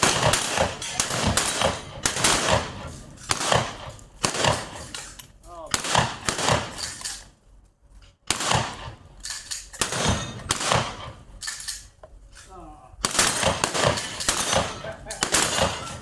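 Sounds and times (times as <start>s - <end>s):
shotgun shots: 0.0s - 5.0s, 5.6s - 7.2s, 8.3s - 9.2s, 9.8s - 11.4s, 13.0s - 16.0s
steel plates clanging: 13.3s - 16.0s.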